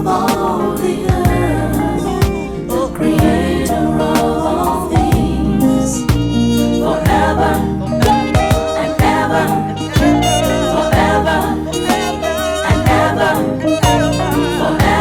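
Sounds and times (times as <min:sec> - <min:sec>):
gospel worship music: 0:00.0 - 0:15.0
drum strokes: 0:08.0 - 0:09.2.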